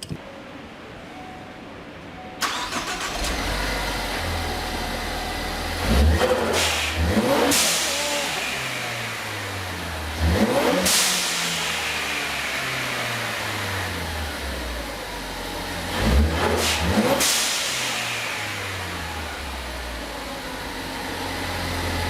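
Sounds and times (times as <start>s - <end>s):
car engine starting and idling: 2.3s - 22.0s
car engine revving: 2.4s - 22.0s
blow-off valve hiss: 6.4s - 10.0s.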